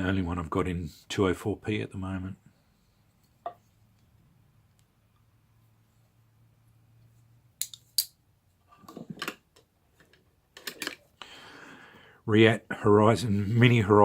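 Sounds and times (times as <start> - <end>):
folding knife metallic clicks: 7.6 - 8.2.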